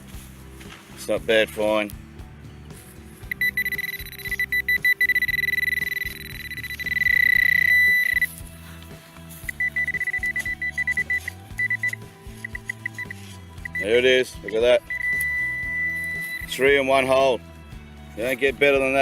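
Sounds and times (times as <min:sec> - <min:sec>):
metal detector probe beeping: 0:03.3 - 0:08.5, 0:09.4 - 0:17.2.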